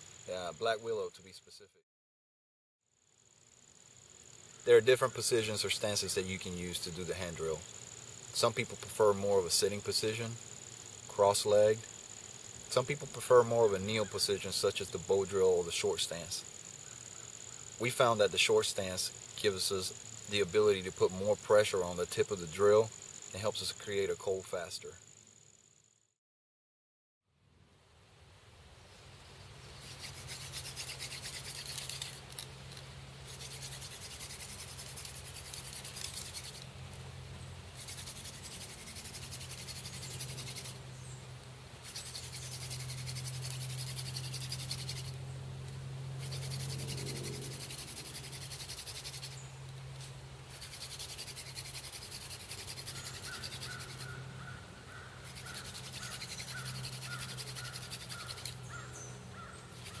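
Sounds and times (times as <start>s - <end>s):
rapid pulsing squeak: 50.5s - 54.2s, 55.2s - 58.6s
hand-drill spindle friction grinding: 55.2s - 58.6s.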